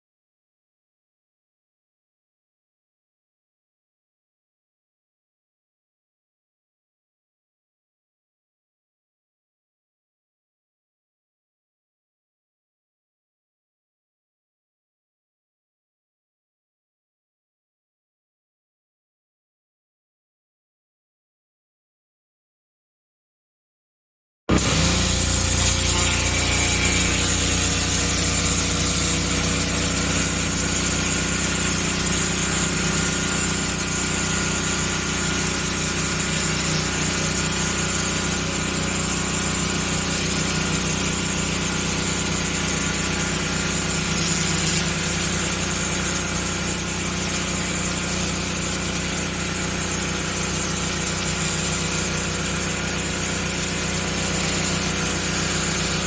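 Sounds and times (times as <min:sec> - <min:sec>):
high-pressure water spray hissing: 0:24.5 - 0:56.0
pressure washer motor humming: 0:24.5 - 0:56.0.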